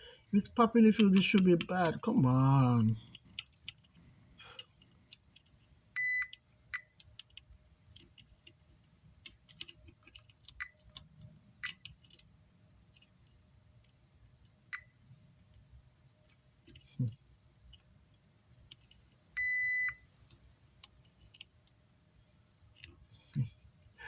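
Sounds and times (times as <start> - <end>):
probe tips clicking: 0.4 - 4.0
multimeter beeping: 6.0 - 6.9, 19.4 - 20.0.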